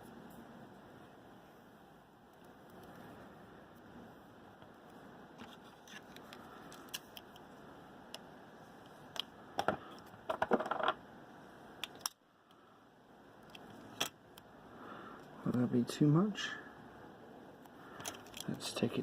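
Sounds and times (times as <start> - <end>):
tape unrolling crackle: 5.4 - 7.5.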